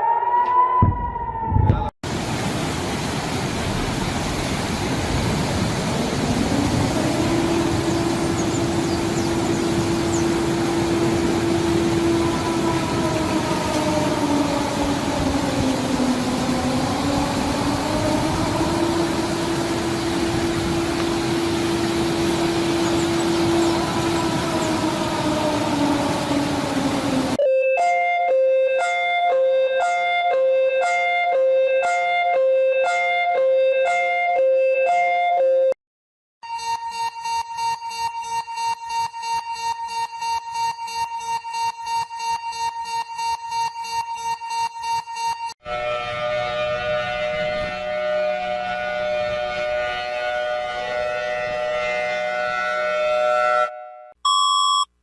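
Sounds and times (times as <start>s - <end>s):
warning siren wailing: 0.0s - 1.9s, 5.2s - 35.8s, 36.4s - 54.4s.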